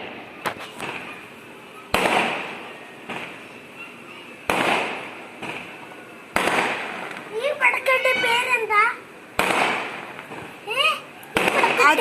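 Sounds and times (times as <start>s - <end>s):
firecracker bangs echoing: 0.0s - 1.2s, 1.9s - 3.5s, 4.4s - 8.7s, 9.3s - 10.6s, 11.3s - 12.0s
firecracker pops: 0.0s - 1.2s, 1.9s - 3.5s, 4.5s - 7.3s, 9.4s - 10.6s, 11.2s - 12.0s.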